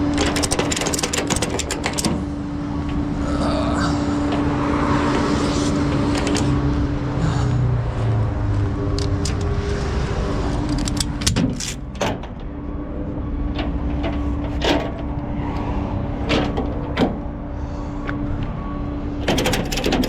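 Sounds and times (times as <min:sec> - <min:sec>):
tow truck engine running: 0:00.0 - 0:20.0.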